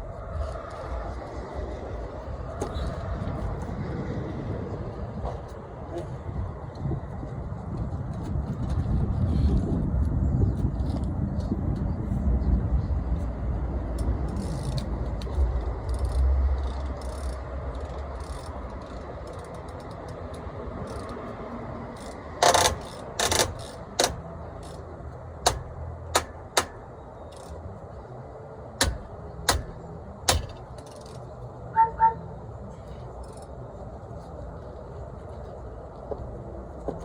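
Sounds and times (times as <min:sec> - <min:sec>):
hammer striking brake drum: 0:25.4 - 0:27.4, 0:28.8 - 0:31.0.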